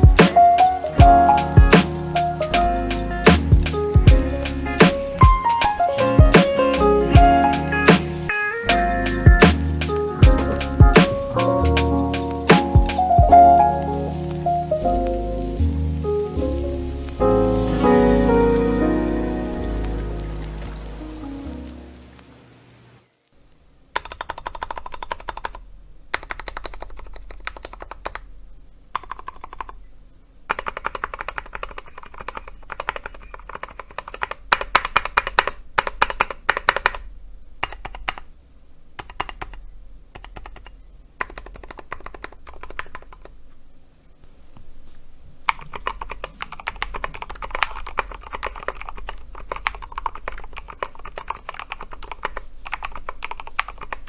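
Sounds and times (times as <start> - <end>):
mechanical keyboard typing: 10.2 - 14.4, 23.9 - 28.3, 28.9 - 29.8, 30.5 - 38.3, 39.0 - 43.4, 45.4 - 54.0.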